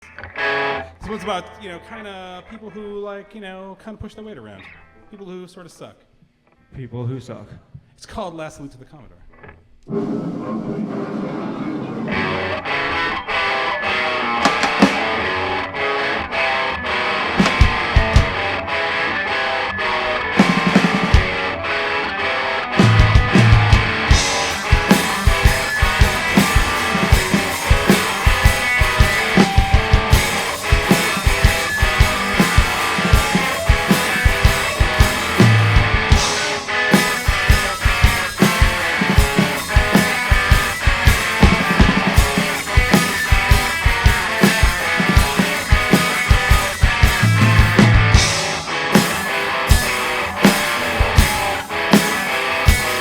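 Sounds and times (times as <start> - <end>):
electric guitars: 0.0 - 1.9, 11.3 - 53.0
fast drum hits: 14.5 - 15.1, 17.4 - 18.4, 20.4 - 21.5, 22.8 - 53.0.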